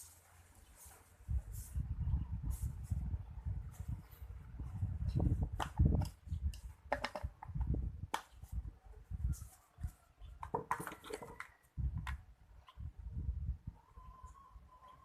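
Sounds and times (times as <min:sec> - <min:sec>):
parts and packaging being handled: 0:09.3 - 0:11.7.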